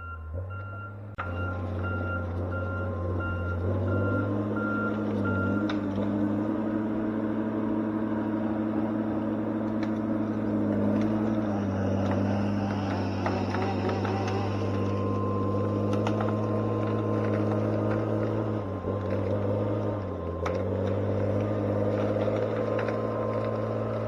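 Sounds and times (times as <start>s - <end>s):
backup alarm beeping: 0.0s - 5.7s
diesel engine running: 0.0s - 24.0s.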